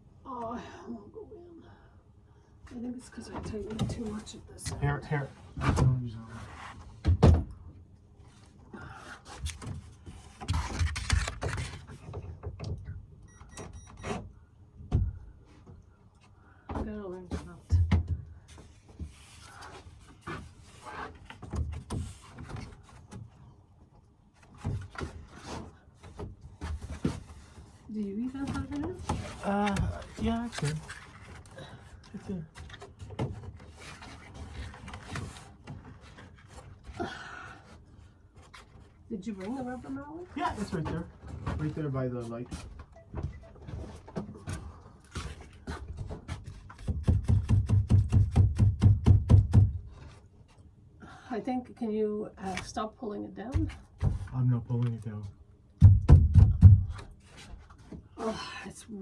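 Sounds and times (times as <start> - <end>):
wooden boards knocking and scraping: 45.2 - 50.1
rubber mallet knocking wood: 55.8 - 57.0.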